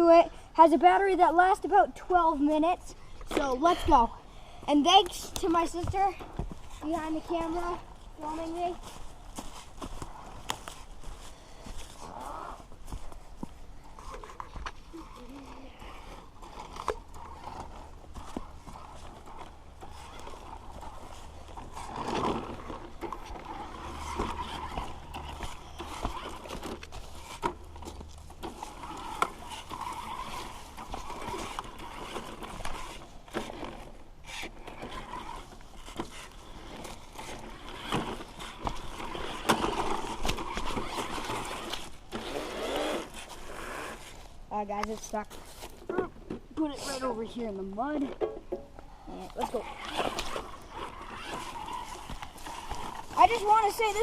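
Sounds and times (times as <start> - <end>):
wheels bumping over dirt: 0.0 - 54.0
toy truck electric motor: 15.8 - 44.2, 49.4 - 54.0.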